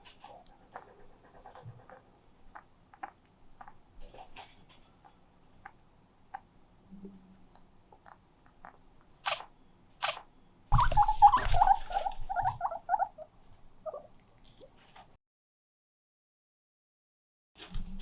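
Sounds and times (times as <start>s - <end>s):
guinea pig squeaking: 0.0s - 6.4s, 8.0s - 14.1s.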